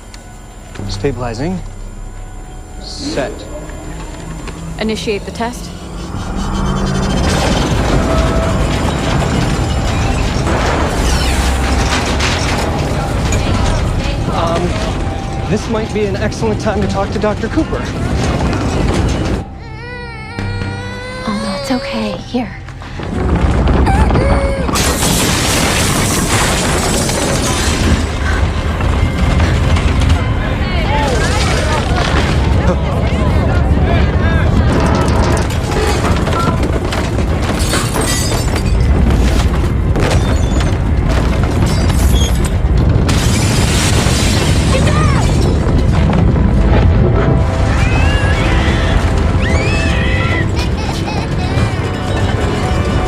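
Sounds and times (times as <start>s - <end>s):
deep earthquake rumble: 0.0s - 19.7s, 21.6s - 53.0s
crashing and rattling: 2.7s - 19.8s, 22.7s - 53.0s
debris falling and breaking: 6.2s - 19.6s, 22.7s - 53.0s
dramatic orchestral score: 44.4s - 53.0s.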